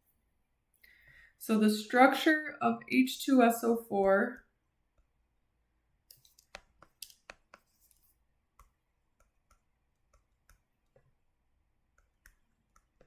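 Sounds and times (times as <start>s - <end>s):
faint clicks and light taps: 6.1s - 11.2s, 11.9s - 13.0s.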